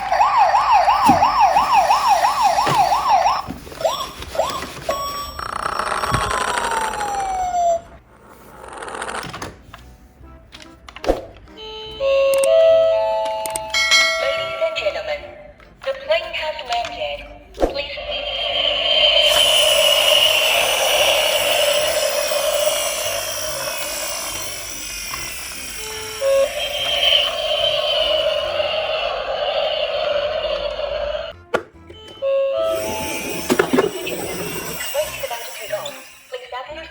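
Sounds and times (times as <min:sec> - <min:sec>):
siren wailing and whooping: 0:00.0 - 0:07.9, 0:18.2 - 0:31.3
rising hiss: 0:18.3 - 0:31.3
toy vehicles whirring and rattling: 0:18.4 - 0:31.2, 0:32.7 - 0:36.3.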